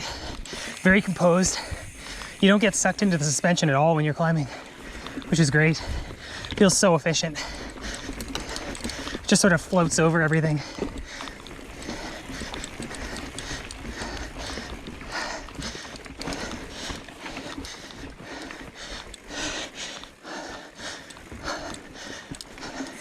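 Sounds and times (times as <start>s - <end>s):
bike tyres rumbling over trail: 0.0s - 23.0s
person breathing hard: 0.0s - 23.0s.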